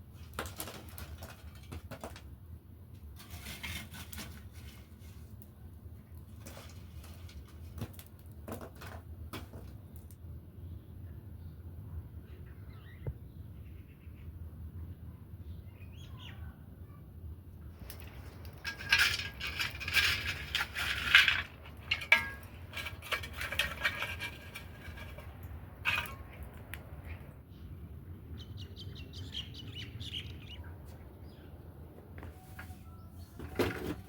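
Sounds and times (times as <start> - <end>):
birds chirping: 10.6 - 17.0, 25.9 - 33.6.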